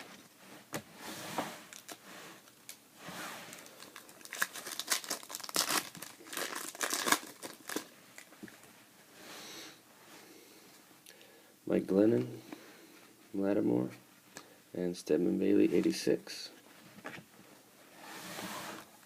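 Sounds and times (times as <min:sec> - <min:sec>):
foil wrapper tearing and crinkling: 0:03.8 - 0:08.3.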